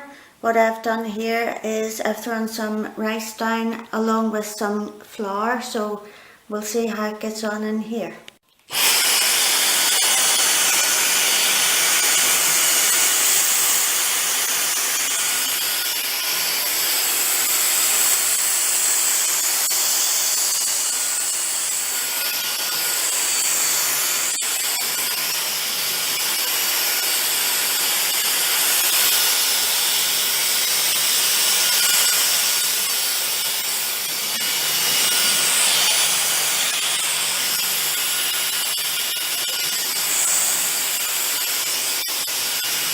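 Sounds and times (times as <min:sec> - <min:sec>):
cordless vacuum running: 0:08.7 - 0:42.9.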